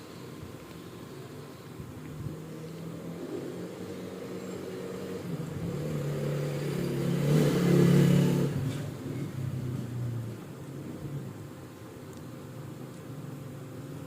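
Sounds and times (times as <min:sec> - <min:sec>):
vehicle engine passing by: 0:02.2 - 0:11.4.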